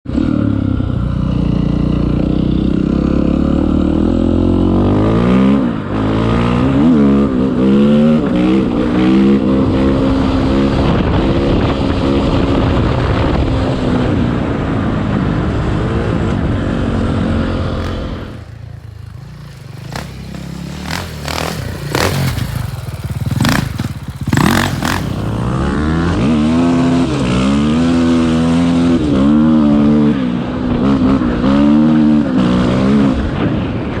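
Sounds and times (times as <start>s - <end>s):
dirt bike engine revving: 2.8s - 12.3s, 16.8s - 33.1s.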